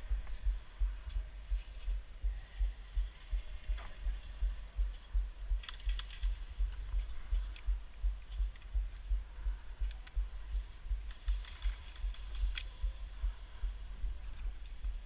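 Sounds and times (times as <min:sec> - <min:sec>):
sharp clicks: 0:05.5 - 0:06.8, 0:11.1 - 0:12.8.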